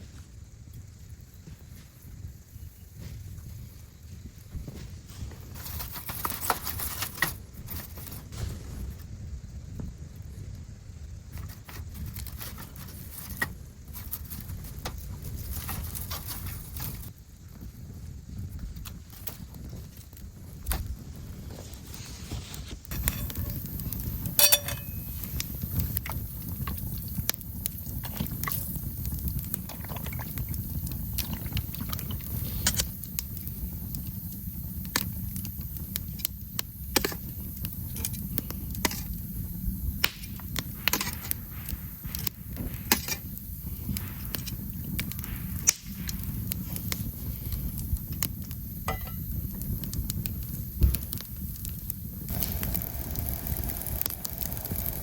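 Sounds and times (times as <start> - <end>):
campfire crackling: 0.0 - 55.0.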